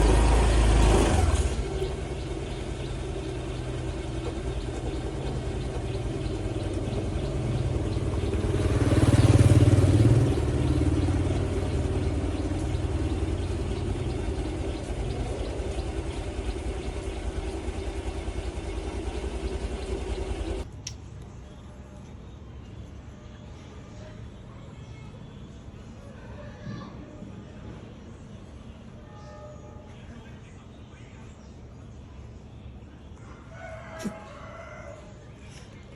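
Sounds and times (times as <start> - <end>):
engine running: 0.0 - 20.7.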